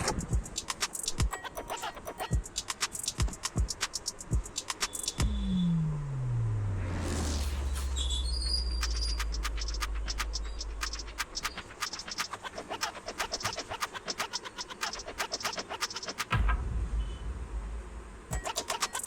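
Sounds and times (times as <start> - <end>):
rapid sharp clicks: 0.0 - 5.2, 8.8 - 16.4, 18.3 - 19.0
low hum: 5.2 - 11.6, 16.3 - 18.5.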